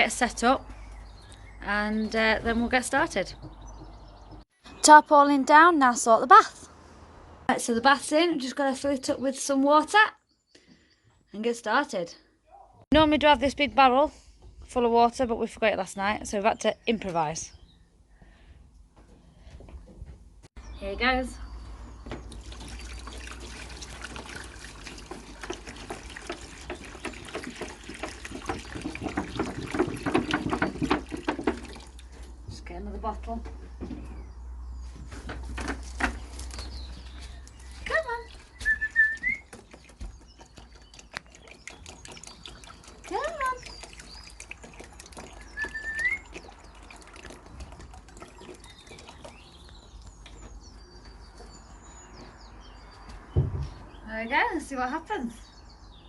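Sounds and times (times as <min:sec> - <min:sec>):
water pouring into plastic tub: 0:22.2 - 0:32.2, 0:39.5 - 0:49.7
water gurgling: 0:40.8 - 0:49.4.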